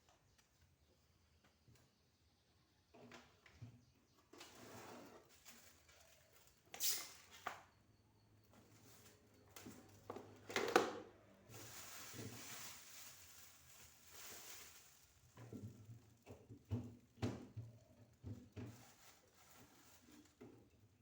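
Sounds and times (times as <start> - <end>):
light knocks of shelves and containers: 15.4 - 18.9.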